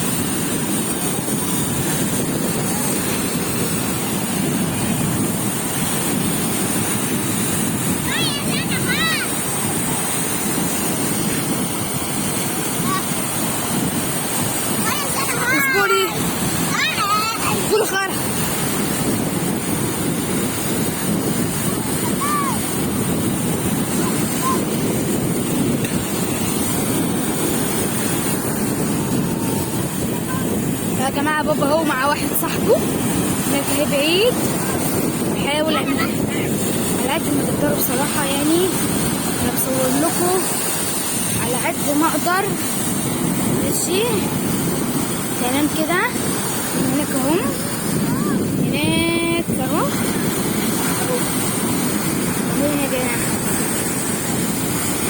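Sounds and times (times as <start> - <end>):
sea surf breaking on beach: 0.0 - 55.0
wind buffeting microphone: 0.0 - 55.0.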